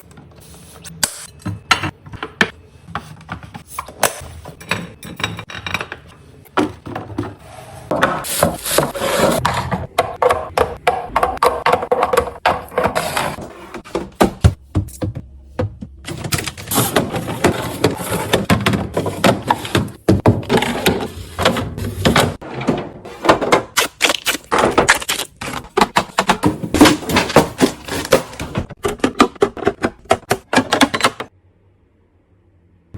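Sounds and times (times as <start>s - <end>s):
food containers clattering: 1.3s - 31.3s.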